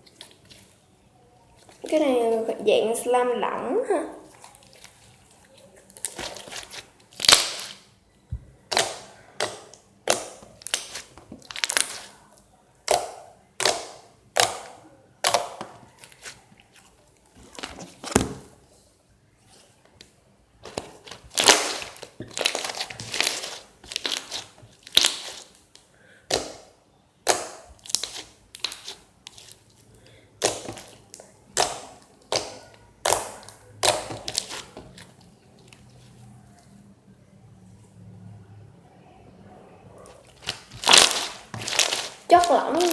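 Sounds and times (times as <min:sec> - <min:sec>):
slime squelching: 0:00.0 - 0:36.9, 0:39.9 - 0:42.9.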